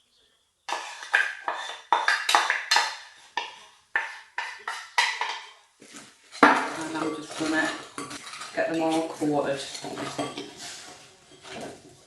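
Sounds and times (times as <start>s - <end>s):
pan and spoon clattering: 0.7s - 5.6s, 6.3s - 10.6s.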